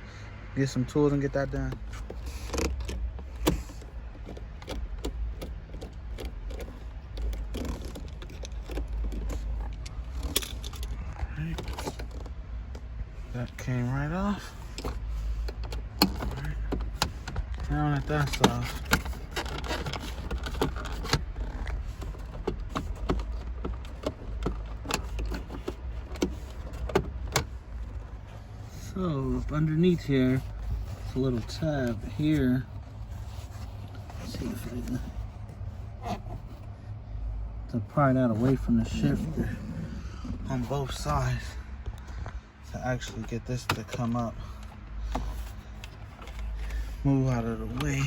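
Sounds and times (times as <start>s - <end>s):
steady low hum: 0.0s - 48.0s
hand tools clicking and scraping: 1.6s - 12.9s, 14.3s - 36.6s.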